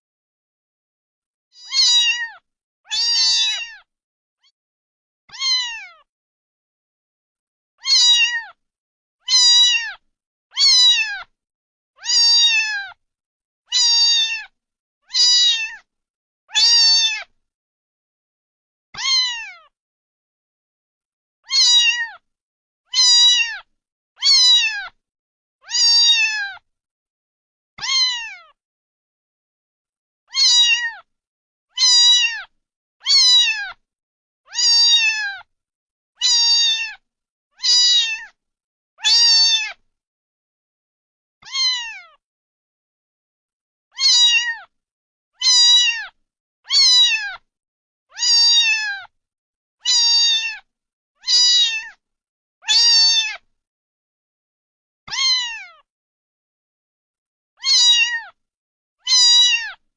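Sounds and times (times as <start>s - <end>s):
cat meowing: 1.6s - 4.5s, 5.3s - 6.1s, 7.8s - 8.6s, 9.3s - 11.3s, 12.0s - 13.0s, 13.7s - 15.9s, 16.5s - 17.3s, 19.0s - 19.7s, 21.4s - 22.2s, 22.9s - 25.0s, 25.6s - 26.6s, 27.8s - 28.6s, 30.3s - 31.1s, 31.7s - 33.8s, 34.5s - 35.5s, 36.2s - 37.0s, 37.6s - 38.4s, 39.0s - 39.8s, 41.4s - 42.2s, 43.9s - 44.7s, 45.4s - 47.4s, 48.1s - 49.1s, 49.8s - 52.0s, 52.6s - 53.4s, 55.1s - 55.9s, 57.6s - 58.3s, 59.0s - 59.8s.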